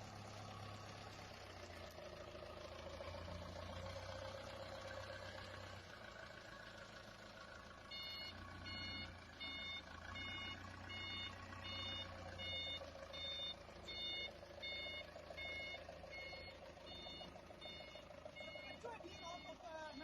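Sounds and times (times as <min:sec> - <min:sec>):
engine running: 0:00.0 - 0:20.0
reversing alarm beeping: 0:07.9 - 0:20.0.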